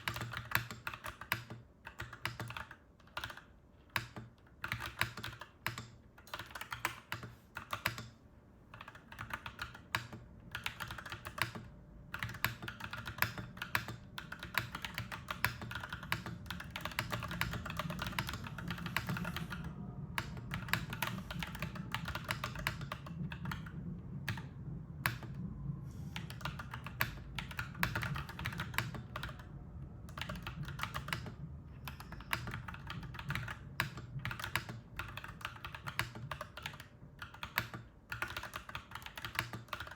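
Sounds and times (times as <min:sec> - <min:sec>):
mechanical keyboard typing: 0:00.0 - 0:25.4, 0:26.2 - 0:39.9
low steady rumble: 0:08.0 - 0:39.9.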